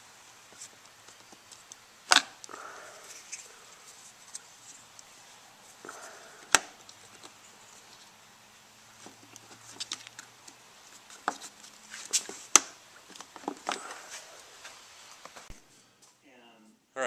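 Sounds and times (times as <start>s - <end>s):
hands clicking and tapping parts: 5.8s - 7.4s, 9.0s - 14.0s.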